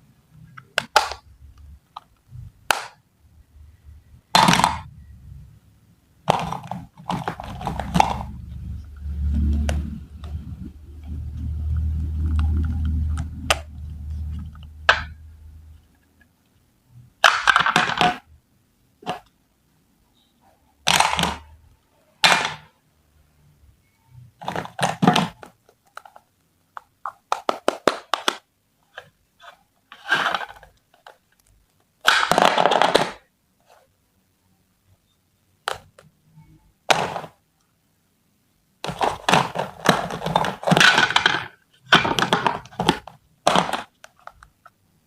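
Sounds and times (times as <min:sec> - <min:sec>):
plastic toys clicking and knocking: 0:00.5 - 0:03.0, 0:04.3 - 0:04.9, 0:06.2 - 0:08.5, 0:12.2 - 0:15.2, 0:17.2 - 0:18.3, 0:20.8 - 0:21.6, 0:22.2 - 0:22.8, 0:24.4 - 0:33.8, 0:35.6 - 0:36.2, 0:36.8 - 0:37.4, 0:38.8 - 0:44.8
rustling and scraping: 0:28.8 - 0:31.5, 0:38.8 - 0:44.4.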